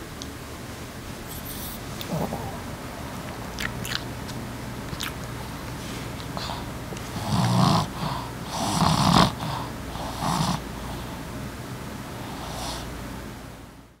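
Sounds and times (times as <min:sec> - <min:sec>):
dog snoring: 0:01.3 - 0:02.7, 0:06.3 - 0:11.2, 0:12.2 - 0:12.9.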